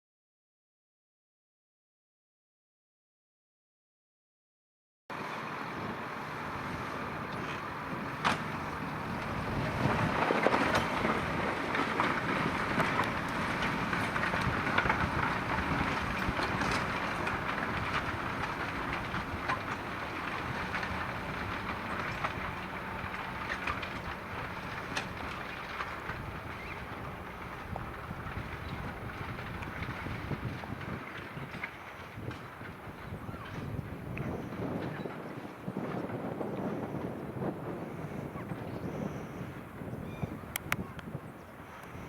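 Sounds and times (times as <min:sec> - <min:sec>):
tractor diesel engine running: 0:05.1 - 0:42.0
faint clicks: 0:40.5 - 0:41.1.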